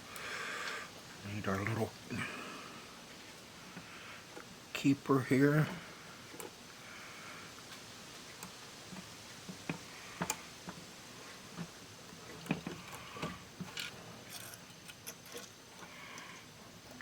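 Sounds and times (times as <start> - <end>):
small parts clicking and tapping: 12.3 - 16.5.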